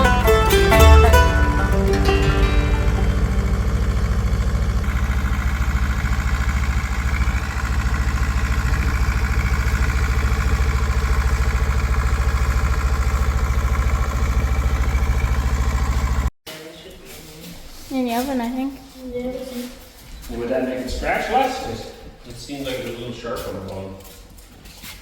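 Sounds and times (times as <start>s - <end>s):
engine running with low throb: 0.0s - 16.3s.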